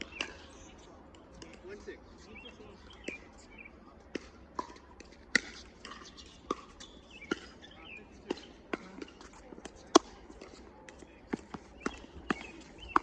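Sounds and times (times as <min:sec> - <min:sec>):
ball bouncing on court: 0:04.1 - 0:13.0.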